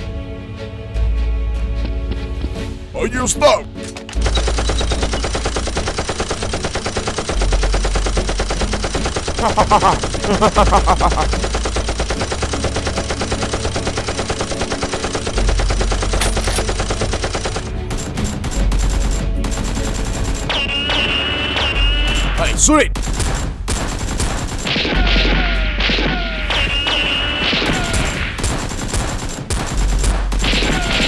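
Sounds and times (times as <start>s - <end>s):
automatic gunfire: 4.2s - 9.4s, 11.4s - 22.4s, 23.0s - 31.0s.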